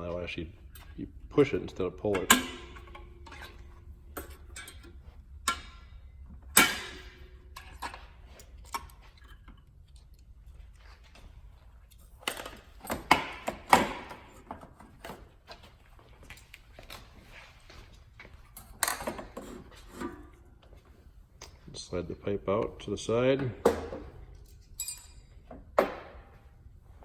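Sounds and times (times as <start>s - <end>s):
metallic clicks and clanks of springs: 2.0s - 10.2s.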